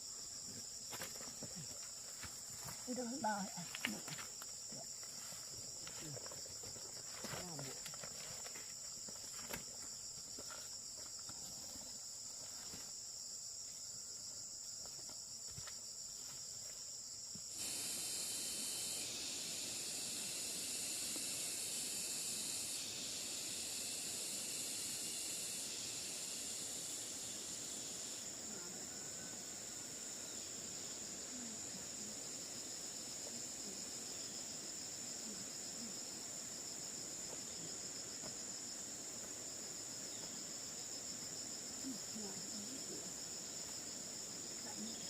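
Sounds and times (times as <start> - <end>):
insects chirring: 0.0 - 45.0
loud hiss: 17.5 - 28.2.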